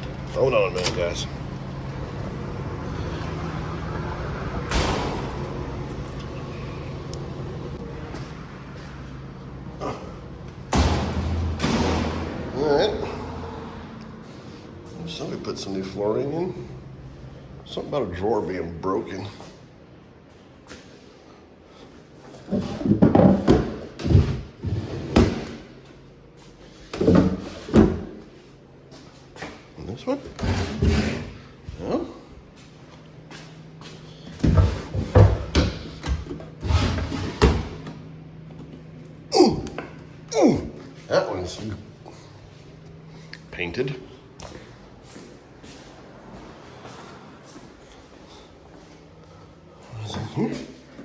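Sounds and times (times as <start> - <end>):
low mechanical hum: 0.0 - 51.0
wooden drawers sliding: 30.3 - 31.4.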